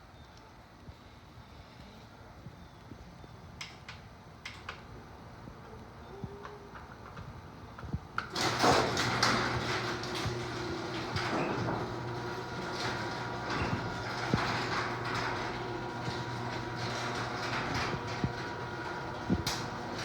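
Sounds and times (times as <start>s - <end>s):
garage door opener hum: 8.2s - 20.0s
garage door rattling and clicking: 8.2s - 20.0s.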